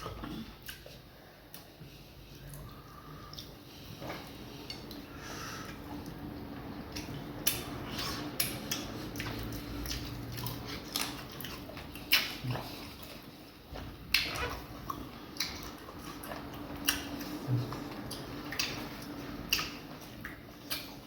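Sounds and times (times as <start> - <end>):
low steady hum: 0.0 - 21.0
wet chewing and lip-smacks: 5.7 - 21.0.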